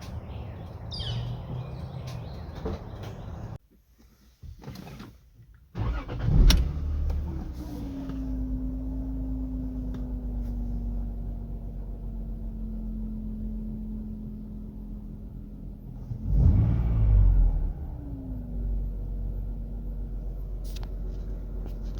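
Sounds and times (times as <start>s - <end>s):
car engine starting and idling: 5.0s - 21.9s
engine revving: 5.8s - 13.6s, 16.0s - 19.6s
engine whine: 5.8s - 21.9s.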